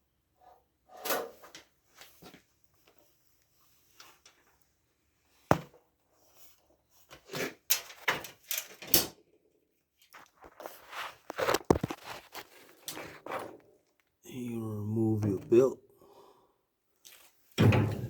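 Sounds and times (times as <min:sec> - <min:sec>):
sheet metal scraping and clunking: 0:17.6 - 0:18.0.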